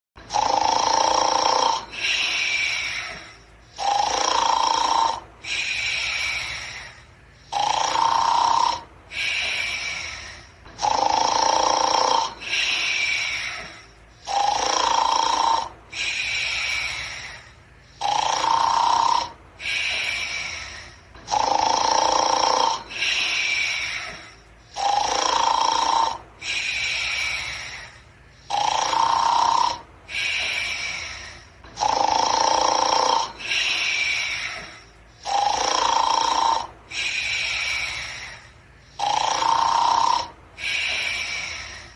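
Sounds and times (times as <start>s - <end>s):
person snoring: 0.2s - 41.9s.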